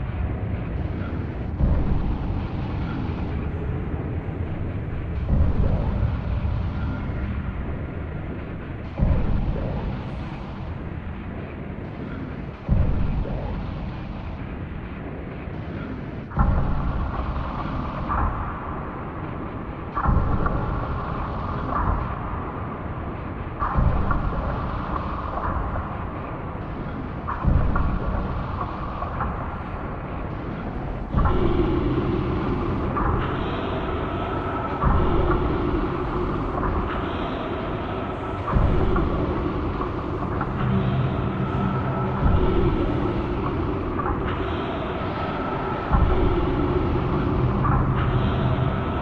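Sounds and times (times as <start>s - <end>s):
deep rumbling drone from sky: 0.0s - 49.0s
steady hum: 0.0s - 49.0s
loud low rumbling drone: 26.6s - 49.0s.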